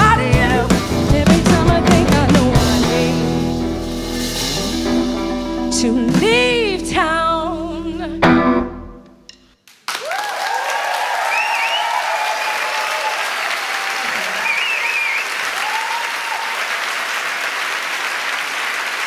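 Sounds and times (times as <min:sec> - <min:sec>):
audience applause and cheering: 0:09.7 - 0:19.0
whoops: 0:10.0 - 0:16.8.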